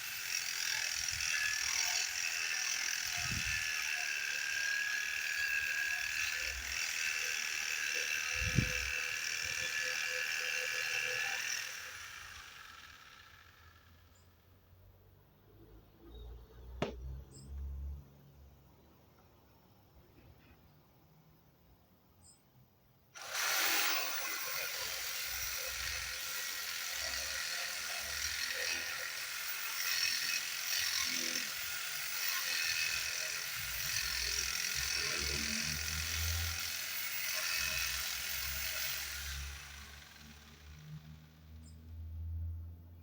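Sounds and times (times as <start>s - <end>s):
power tool cutting wood: 0.0s - 14.3s, 23.2s - 41.8s.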